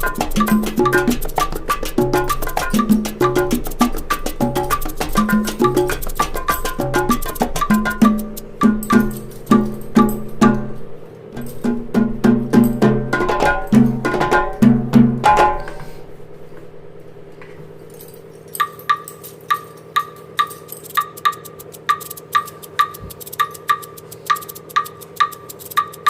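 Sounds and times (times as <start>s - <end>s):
light ticking beat: 0.0s - 10.3s, 18.6s - 26.0s
instrumental music with percussive beat: 0.0s - 15.8s, 18.6s - 26.0s.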